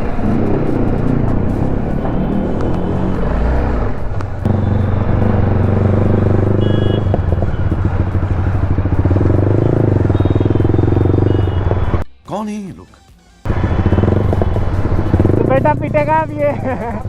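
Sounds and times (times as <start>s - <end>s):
motorcycle engine running: 0.0s - 12.0s, 13.5s - 17.0s
short high beeps: 10.1s - 12.0s.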